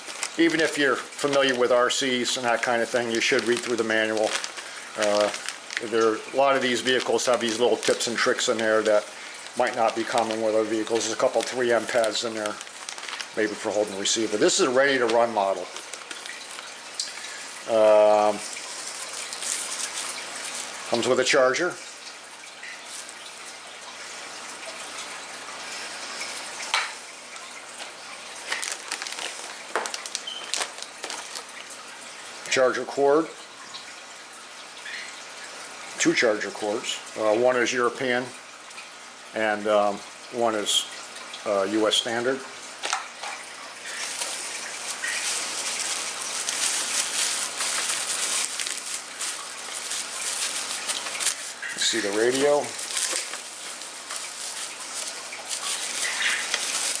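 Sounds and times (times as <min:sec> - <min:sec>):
packaging clicks and crinkles: 0:00.0 - 0:21.2, 0:27.8 - 0:32.0, 0:42.8 - 0:57.0
steady hiss: 0:00.0 - 0:22.0, 0:43.8 - 0:57.0.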